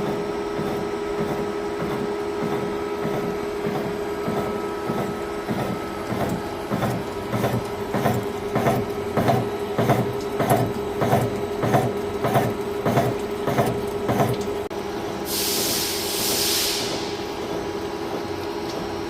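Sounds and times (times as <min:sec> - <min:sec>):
gear shaper cutter strokes: 0:00.0 - 0:14.5
machine hum: 0:00.0 - 0:19.0
hiss: 0:15.3 - 0:17.6.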